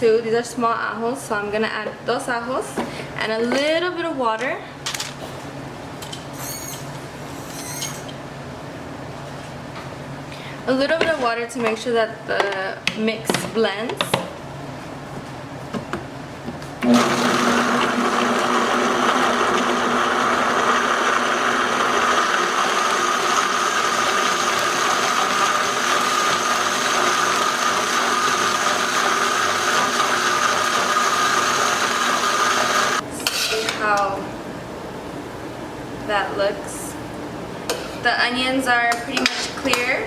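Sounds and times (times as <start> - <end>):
blender running: 16.8 - 33.0.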